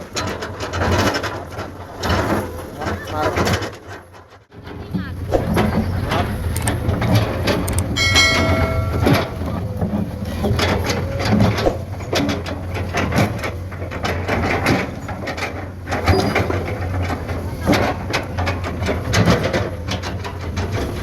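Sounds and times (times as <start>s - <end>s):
clanks and knocks: 0.0s - 21.0s
excavator engine drone: 4.5s - 21.0s.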